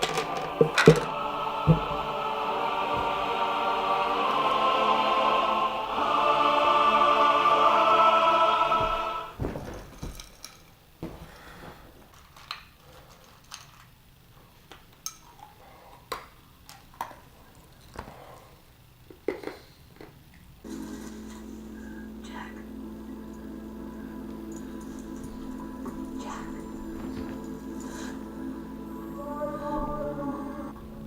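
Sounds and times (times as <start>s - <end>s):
choral music: 0.0s - 10.2s, 20.7s - 31.0s.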